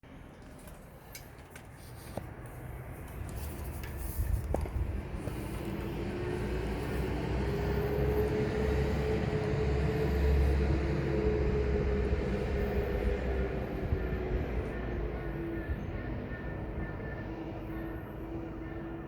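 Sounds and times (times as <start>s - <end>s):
approaching vehicle rumble: 3.4s - 16.2s.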